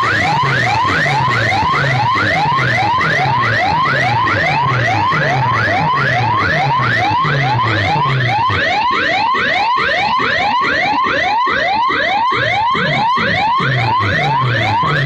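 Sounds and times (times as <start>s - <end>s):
pulsing low bass: 0.0s - 8.8s, 12.7s - 15.0s
siren-like whooping effect: 0.0s - 15.0s.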